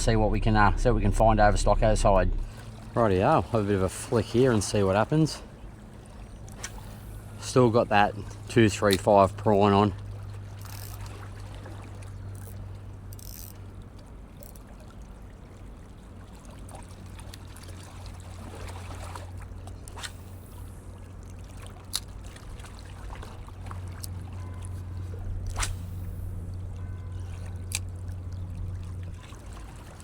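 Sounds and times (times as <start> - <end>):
wind rumble on microphone: 0.0 - 4.8.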